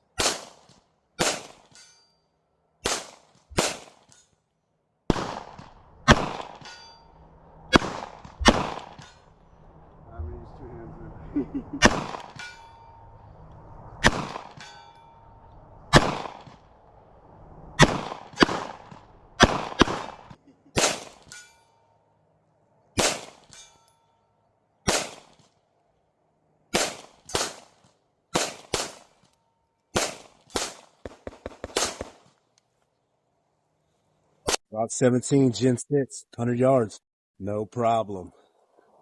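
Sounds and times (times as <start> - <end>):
pistol shots: 0.2 - 1.8, 2.8 - 4.1, 5.1 - 6.8, 7.7 - 9.1, 11.8 - 12.5, 14.0 - 14.8, 15.9 - 16.6, 17.8 - 21.3, 23.0 - 23.6, 24.8 - 25.4, 26.7 - 29.2, 29.9 - 32.3.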